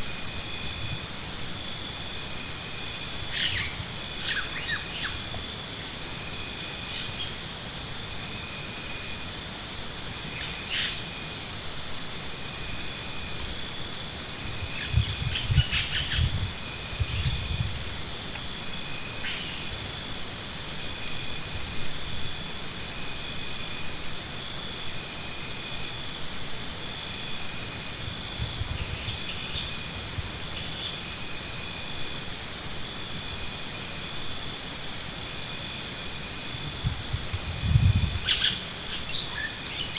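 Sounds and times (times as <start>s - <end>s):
insects trilling: 0.0s - 39.9s
steady high-pitched hum: 0.0s - 39.9s.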